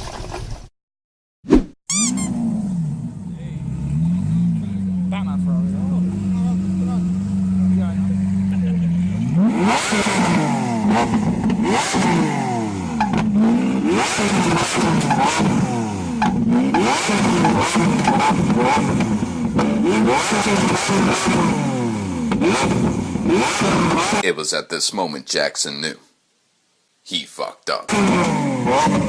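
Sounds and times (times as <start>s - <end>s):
loud exhaust engine revving: 2.2s - 24.2s, 27.9s - 29.0s.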